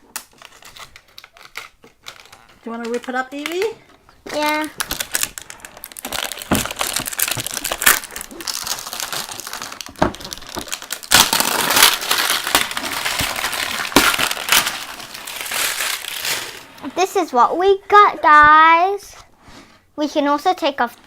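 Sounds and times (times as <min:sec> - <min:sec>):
packaging crinkling and tearing: 0:00.0 - 0:03.7, 0:04.4 - 0:16.9.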